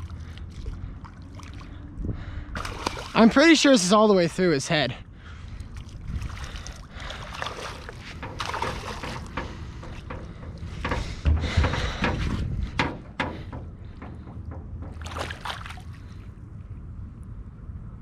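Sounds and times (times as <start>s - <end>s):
wind rumble on microphone: 0.0s - 3.4s, 5.0s - 18.0s
water sloshing and splashing: 0.0s - 16.5s
knocks: 8.2s - 15.3s.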